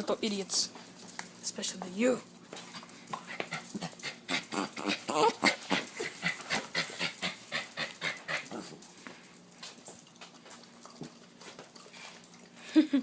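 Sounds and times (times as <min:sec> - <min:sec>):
dog making rapid breath noises: 0:05.5 - 0:08.8.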